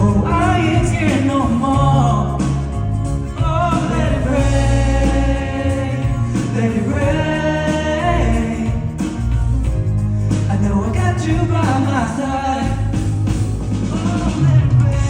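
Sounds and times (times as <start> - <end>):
man singing melismatic run: 0.0 - 2.6, 3.4 - 9.0, 10.5 - 13.1
band playing with bass line: 0.0 - 15.0.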